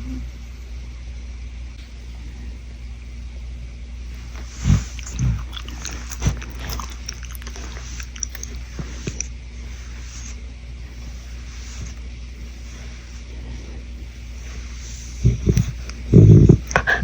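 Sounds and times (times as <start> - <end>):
dog snoring breaths: 4.1 - 17.0
small clicking mouth noises: 4.2 - 10.0, 15.0 - 17.0.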